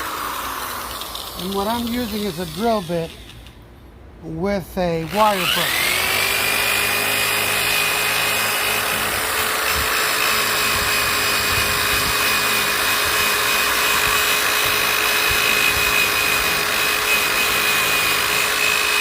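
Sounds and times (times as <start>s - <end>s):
electric drill motor whine: 0.0s - 3.5s, 5.0s - 19.0s
wire brush scouring metal: 1.3s - 3.2s.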